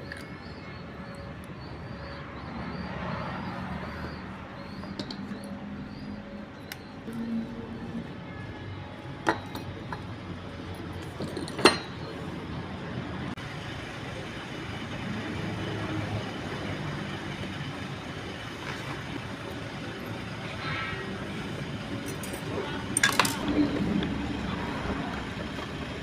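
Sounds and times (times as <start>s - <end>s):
steady background rumble: 20.0s - 26.0s.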